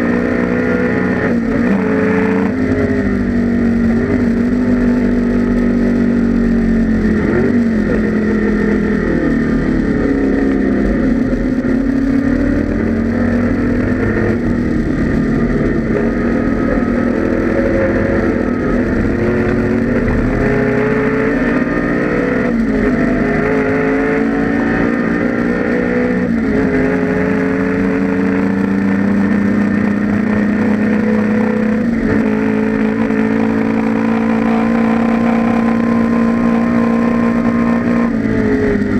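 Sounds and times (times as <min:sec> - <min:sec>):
racing engine running hard: 0:00.0 - 0:38.9.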